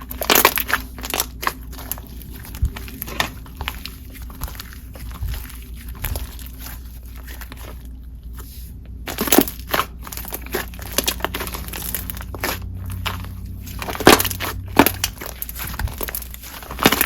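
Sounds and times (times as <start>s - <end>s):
slime crackling and popping: 0.0s - 8.0s, 9.1s - 17.0s.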